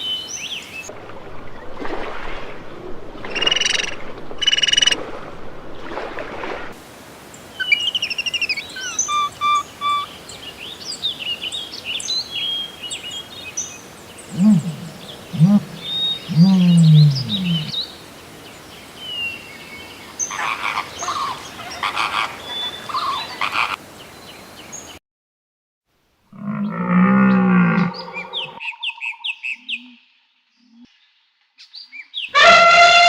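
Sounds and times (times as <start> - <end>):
frogs croaking: 3.2 - 5.0, 14.2 - 18.2
birds chirping: 7.3 - 25.0, 26.6 - 29.8
low drawn-out animal call: 14.3 - 17.8, 26.3 - 28.6, 32.4 - 33.0
high chirps: 14.4 - 17.7
short pulses: 14.4 - 17.7.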